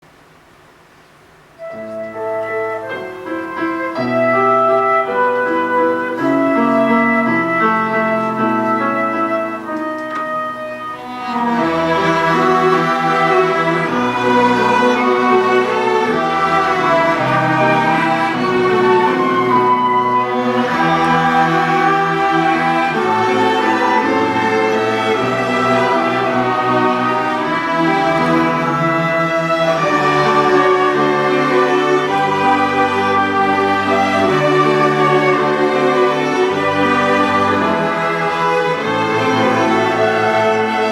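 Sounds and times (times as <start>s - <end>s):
children's orchestra with cellos: 1.6s - 40.9s.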